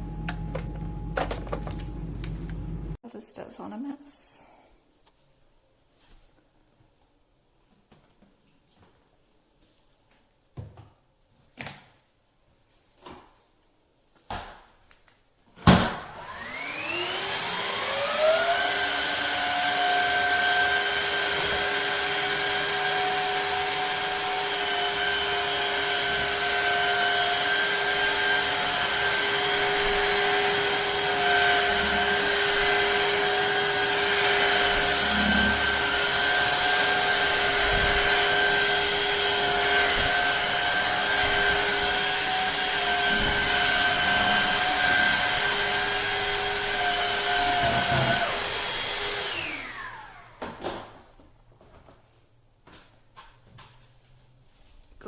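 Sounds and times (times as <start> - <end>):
vacuum mop motor whine: 0.0 - 3.0, 15.7 - 50.8.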